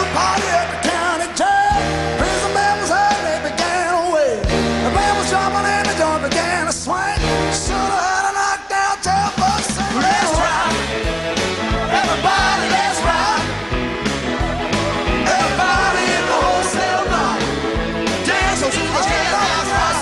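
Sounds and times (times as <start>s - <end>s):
bass: 0.0s - 20.0s
rock song with singer: 0.0s - 20.0s
drum beat: 9.5s - 20.0s.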